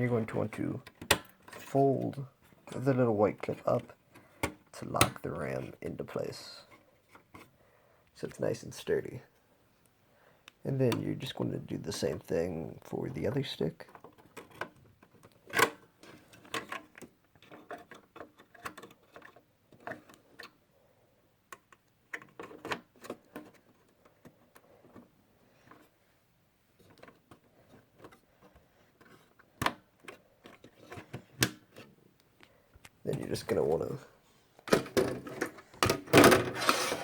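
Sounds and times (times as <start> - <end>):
plastic clicks and knocks: 0.8 - 1.6, 34.6 - 36.6.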